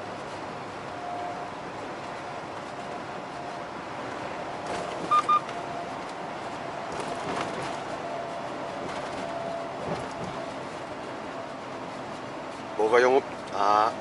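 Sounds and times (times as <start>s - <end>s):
truck road and engine noise: 0.0s - 14.0s
short electronic beeps: 5.0s - 5.5s.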